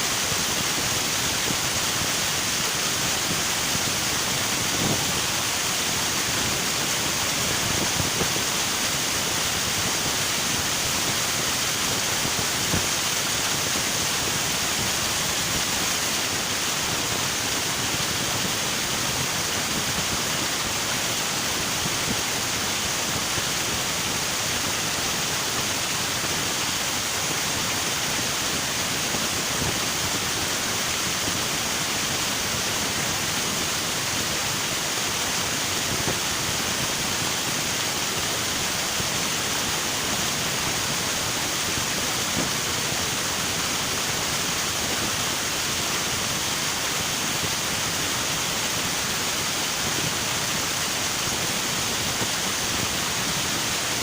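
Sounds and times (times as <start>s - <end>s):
water rushing over rocks: 0.0s - 54.0s.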